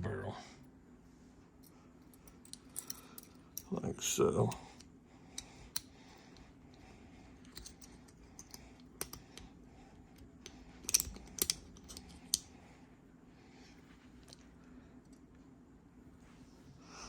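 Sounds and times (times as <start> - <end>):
pistol parts clicking: 2.2 - 3.7, 4.5 - 6.8, 7.4 - 9.5, 10.1 - 12.5.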